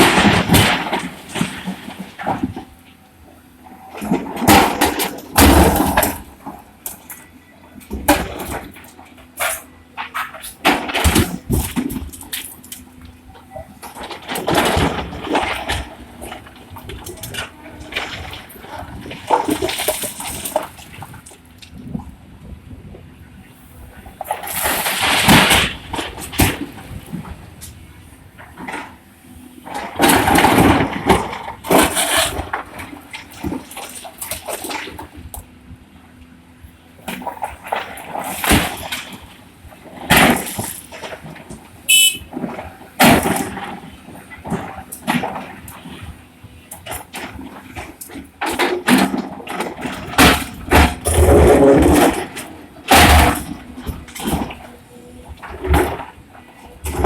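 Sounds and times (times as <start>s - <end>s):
stone crashing into truck: 4.0s - 6.3s, 40.0s - 46.0s, 48.4s - 54.6s
stone dumped clattering: 13.8s - 21.2s, 37.1s - 46.0s, 47.0s - 54.7s.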